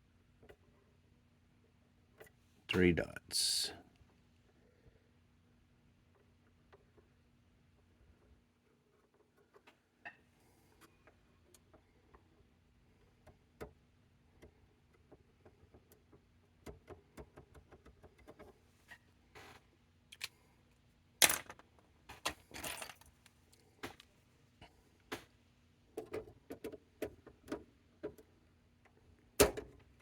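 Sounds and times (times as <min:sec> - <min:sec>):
light clicks and taps of tools: 0:20.1 - 0:20.4.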